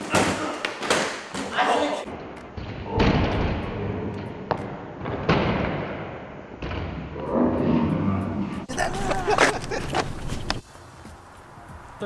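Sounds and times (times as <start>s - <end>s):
dull thumps: 8.7s - 10.6s.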